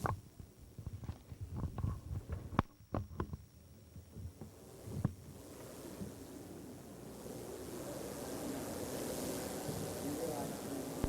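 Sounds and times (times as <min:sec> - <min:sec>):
faint rising rushing noise: 0:04.7 - 0:11.0.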